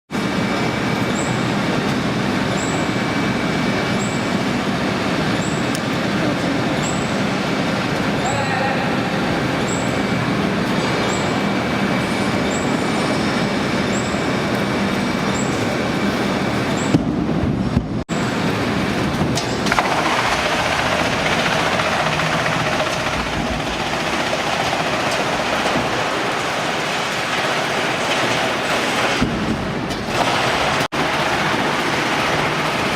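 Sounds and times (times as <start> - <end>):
wood chipper running: 0.2 - 8.2, 18.2 - 32.9.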